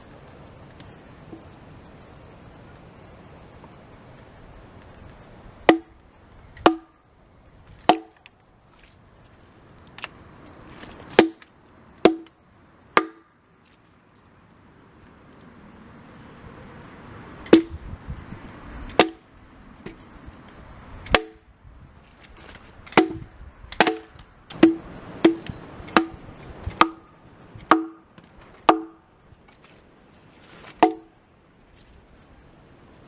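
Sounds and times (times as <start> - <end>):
hatchet chopping wood: 5.7 - 6.0, 6.6 - 7.0, 7.8 - 8.3, 11.1 - 12.3, 13.0 - 13.3, 17.5 - 17.8, 18.9 - 19.2, 21.1 - 21.4, 22.9 - 28.0, 28.6 - 29.0, 30.8 - 31.1.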